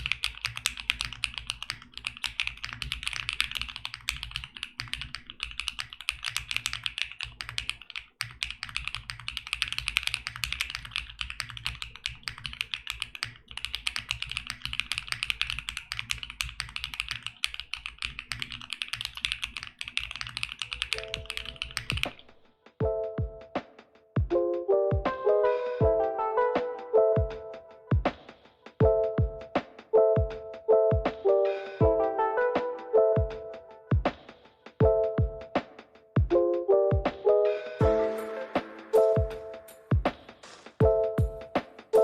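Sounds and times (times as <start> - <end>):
fast mechanical keyboard typing: 0.0 - 22.3
music notes: 24.3 - 28.2, 28.8 - 35.7, 36.3 - 42.0.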